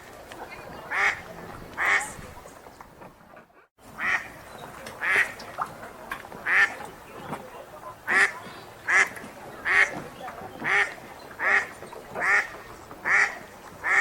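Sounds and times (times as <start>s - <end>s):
ducks quacking: 0.4s - 2.9s, 3.6s - 5.4s, 6.4s - 14.0s.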